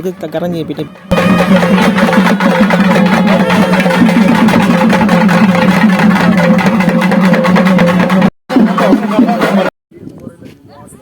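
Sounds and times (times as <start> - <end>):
steady low drone: 1.1 - 8.7
rapid procession drumming: 1.1 - 9.7.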